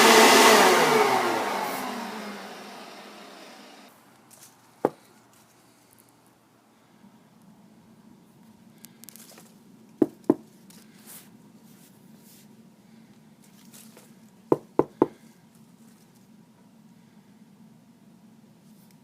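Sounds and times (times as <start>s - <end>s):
faint steady hum: 1.0s - 19.0s.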